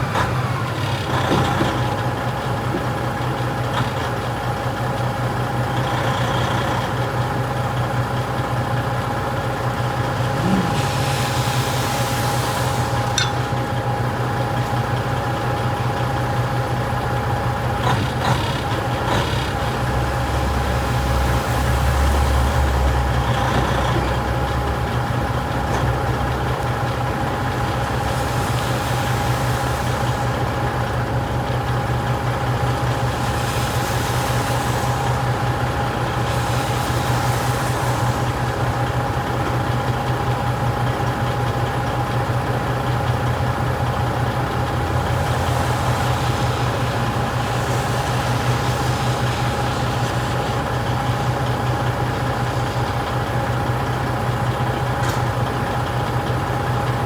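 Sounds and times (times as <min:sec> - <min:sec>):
truck engine running: 0:00.0 - 0:57.0
faint steady whine: 0:09.7 - 0:15.1.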